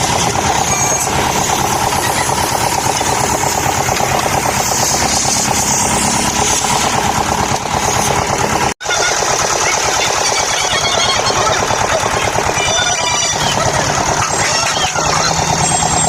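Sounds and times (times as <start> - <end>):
power carving tool cutting wood: 0.0 - 9.0.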